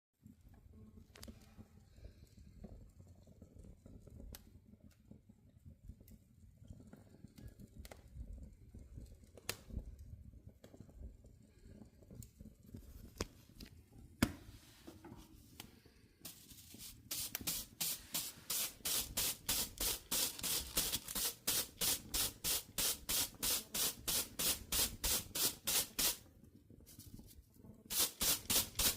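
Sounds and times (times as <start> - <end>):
rapid scrubbing strokes: 16.3 - 26.2, 27.9 - 28.9.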